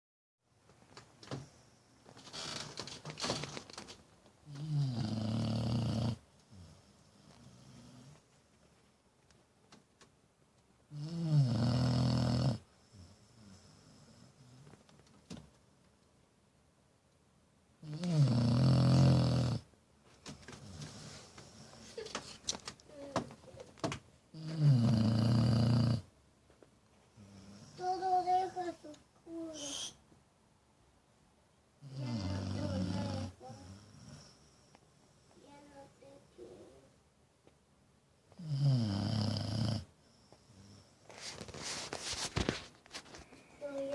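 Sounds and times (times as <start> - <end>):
person snoring: 4.5 - 6.7, 10.9 - 14.2, 17.8 - 19.6, 24.4 - 26.1, 31.8 - 34.3, 38.4 - 39.9
quiet breathing: 12.5 - 15.0, 18.9 - 22.1, 26.9 - 28.9, 32.0 - 36.9, 39.8 - 42.0, 43.0 - 43.9.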